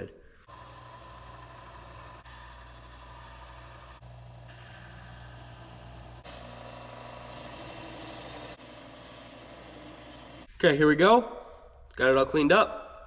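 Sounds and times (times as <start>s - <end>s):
motor humming: 0.4s - 10.5s.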